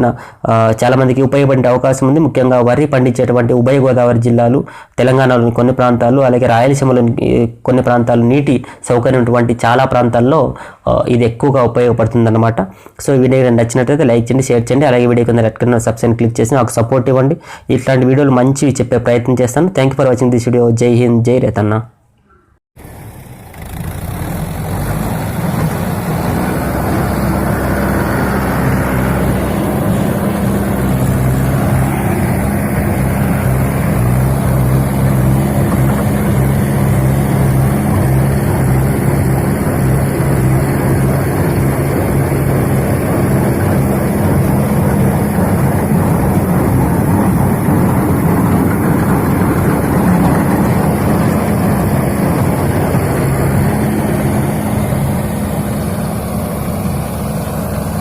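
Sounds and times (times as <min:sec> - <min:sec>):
tractor engine running: 0:22.8 - 0:58.0.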